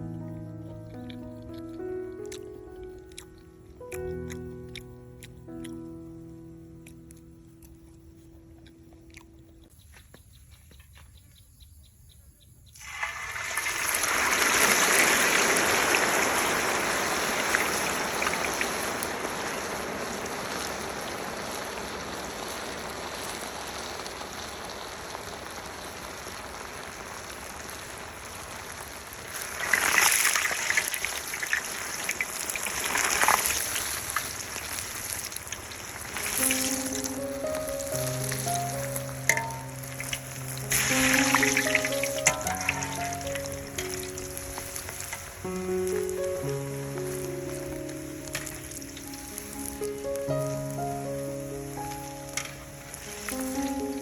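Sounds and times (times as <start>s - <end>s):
crackling bursts: 12.8s - 54.0s
food sizzling in a pan: 12.8s - 54.0s.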